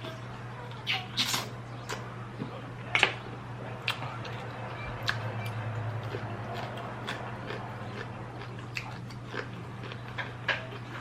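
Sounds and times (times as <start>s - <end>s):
steady low hum: 0.0s - 11.0s
person chewing food: 3.8s - 11.0s.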